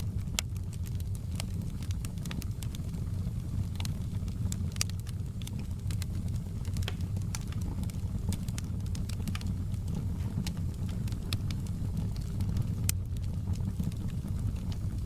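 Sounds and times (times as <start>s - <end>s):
wood fire crackling: 0.0s - 15.0s
sharp pops and snaps: 3.6s - 15.0s.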